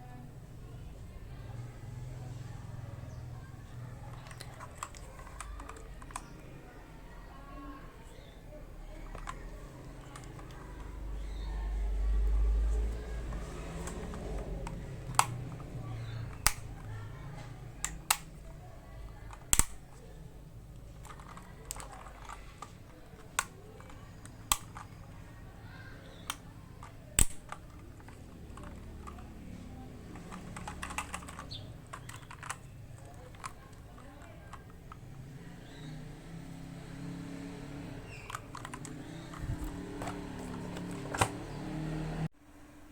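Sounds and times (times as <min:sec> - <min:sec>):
mechanical keyboard key clacks: 0:03.9 - 0:06.5, 0:13.2 - 0:18.4, 0:19.1 - 0:25.0, 0:26.1 - 0:35.1, 0:38.0 - 0:41.5.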